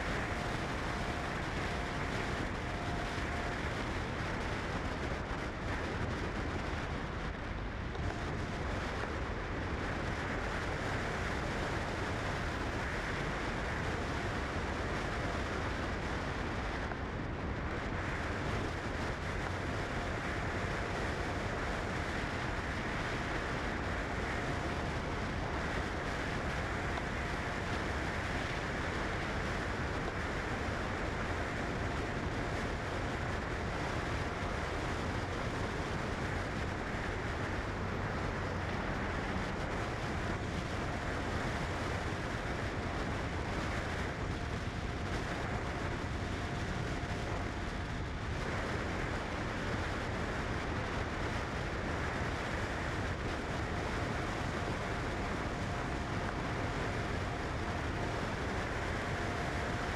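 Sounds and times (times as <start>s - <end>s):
car road and wind noise: 0.0s - 59.9s
faint steady hum: 0.0s - 59.9s.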